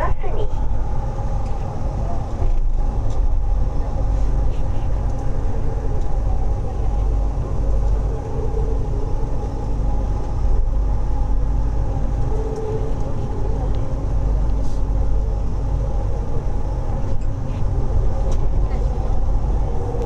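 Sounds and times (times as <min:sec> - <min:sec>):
train rumble and hum: 0:00.0 - 0:20.0.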